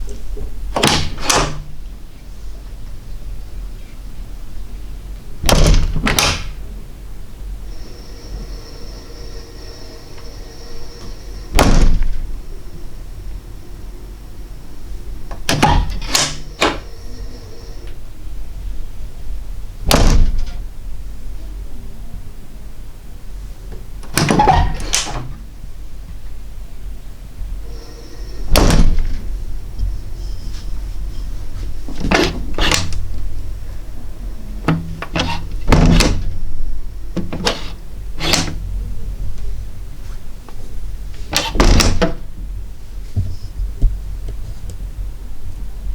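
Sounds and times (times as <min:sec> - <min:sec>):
steady low hum: 0:00.0 - 0:45.9
door shutting knock: 0:11.0 - 0:12.2, 0:28.5 - 0:29.3, 0:34.7 - 0:36.3, 0:41.4 - 0:42.2
door latch clicks and knocks: 0:15.3 - 0:16.8, 0:34.7 - 0:36.3, 0:37.2 - 0:38.6.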